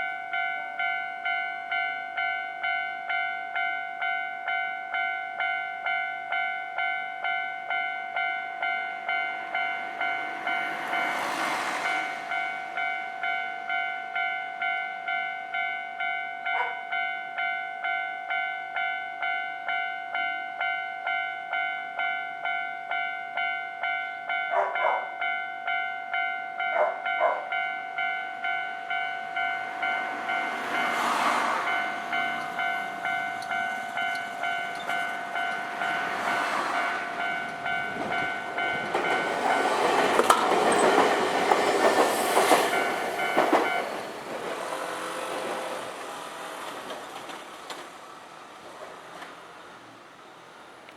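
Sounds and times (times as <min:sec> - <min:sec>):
level crossing bell ringing: 0:00.0 - 0:41.1
train wheel clatter: 0:30.6 - 0:49.6.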